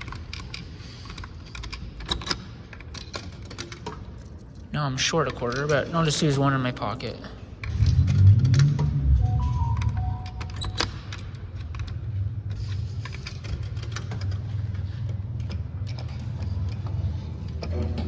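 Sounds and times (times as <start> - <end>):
electronic beeps: 9.2 - 11.0
coins clinking into machine: 9.2 - 11.8.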